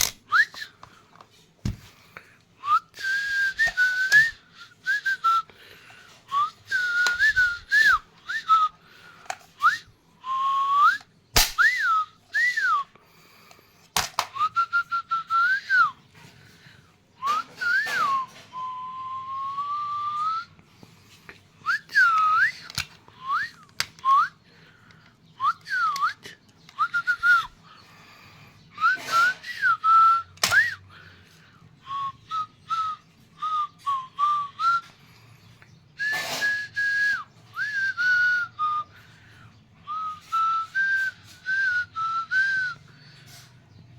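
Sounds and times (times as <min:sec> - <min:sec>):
person whistling: 0:00.3 - 0:00.9, 0:02.6 - 0:13.0, 0:14.3 - 0:16.0, 0:17.2 - 0:20.6, 0:21.6 - 0:24.6, 0:25.3 - 0:27.8, 0:28.8 - 0:31.2, 0:31.8 - 0:35.2, 0:36.0 - 0:43.5.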